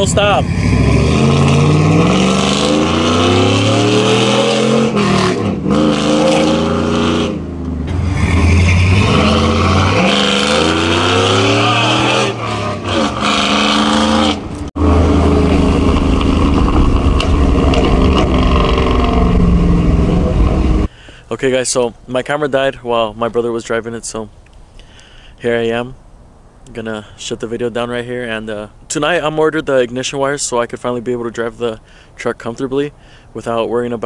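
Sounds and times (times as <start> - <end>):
pickup engine revving through gears: 0.0 - 20.9.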